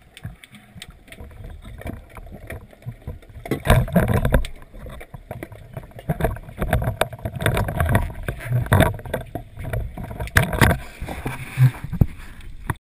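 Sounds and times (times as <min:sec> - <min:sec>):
water sloshing and splashing: 0:00.0 - 0:12.8
knocks and clicks: 0:00.2 - 0:10.8.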